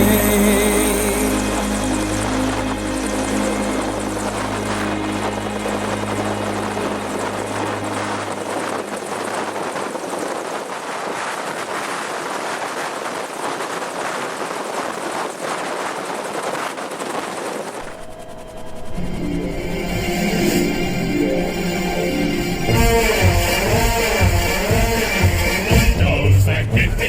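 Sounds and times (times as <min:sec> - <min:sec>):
song ending chord: 0:00.0 - 0:09.3, 0:18.8 - 0:27.0
helicopter turbine and rotor: 0:01.0 - 0:25.7.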